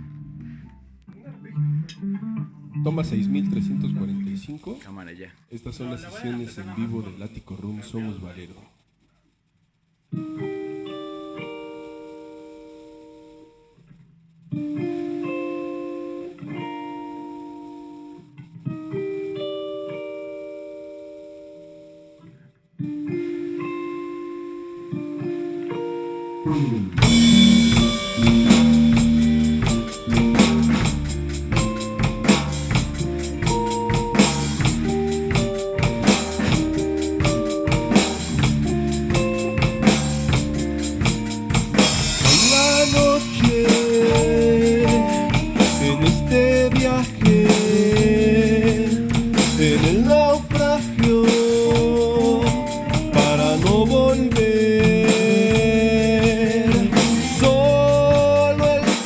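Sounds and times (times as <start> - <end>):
bending electric guitar lead: 0.0 - 4.4, 14.5 - 59.0
rock band playing live: 25.8 - 59.0.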